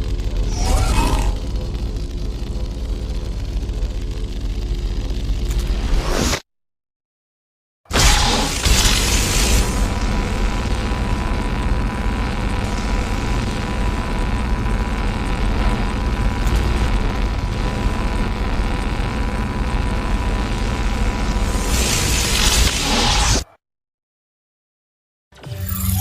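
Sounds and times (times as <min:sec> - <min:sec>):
low rumble: 0:00.0 - 0:06.1, 0:08.7 - 0:22.4.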